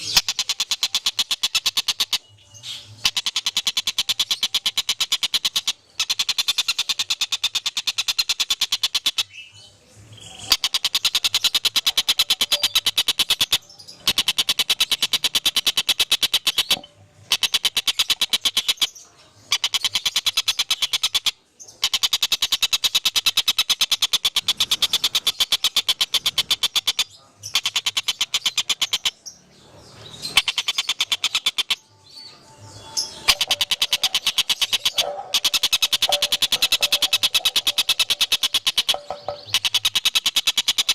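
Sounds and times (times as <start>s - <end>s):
bird high trill: 10.3s - 29.3s, 30.2s - 40.9s.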